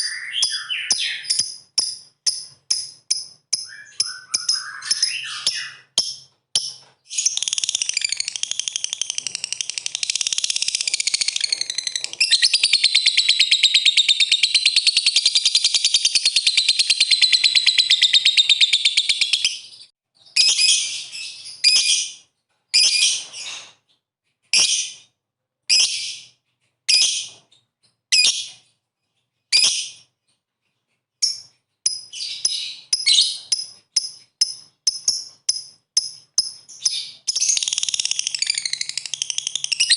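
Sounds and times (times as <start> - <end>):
lovebird chattering trill: 0.0 - 6.0.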